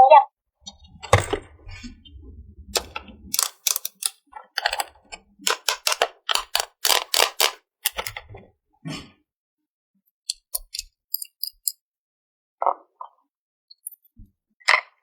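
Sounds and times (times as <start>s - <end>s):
low rumble: 0.6s - 3.4s
plastic toy pieces clicking: 2.8s - 8.2s, 10.3s - 11.8s.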